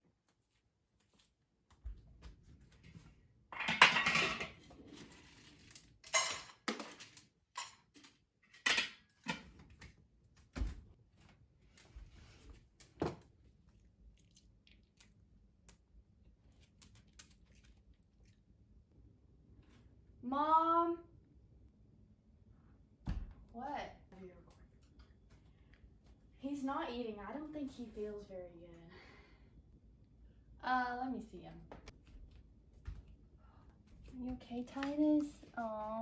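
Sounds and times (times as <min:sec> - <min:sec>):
household objects clattering: 0:03.6 - 0:09.8.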